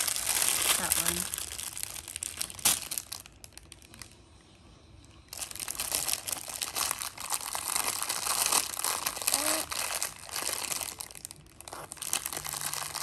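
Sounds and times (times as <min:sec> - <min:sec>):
plastic packaging crinkling: 0:00.0 - 0:04.1, 0:05.3 - 0:13.0.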